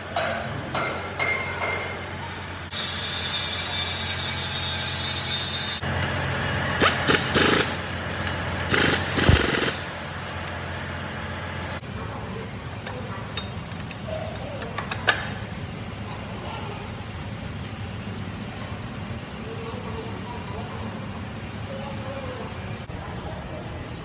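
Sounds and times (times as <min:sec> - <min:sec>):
power tool bursts: 0:06.7 - 0:07.9, 0:08.6 - 0:10.0.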